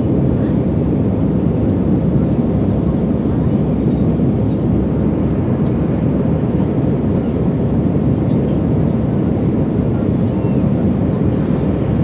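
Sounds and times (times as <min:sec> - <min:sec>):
airplane cabin engine roar: 0:00.0 - 0:12.0.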